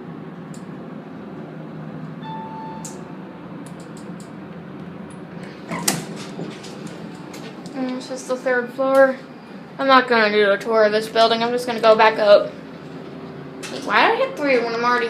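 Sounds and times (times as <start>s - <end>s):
elevator hum: 0.0s - 15.0s
short beep: 2.2s - 3.1s.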